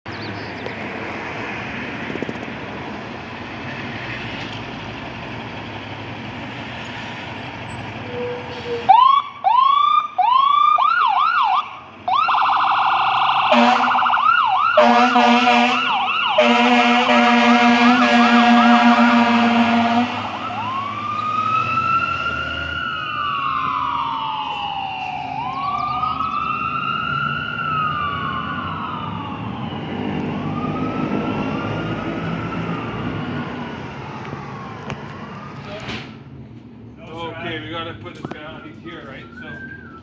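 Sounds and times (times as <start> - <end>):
street noise: 0.0 - 40.0
fire engine siren: 7.6 - 36.2, 38.5 - 40.0
fire engine air horn blasts: 13.4 - 20.9.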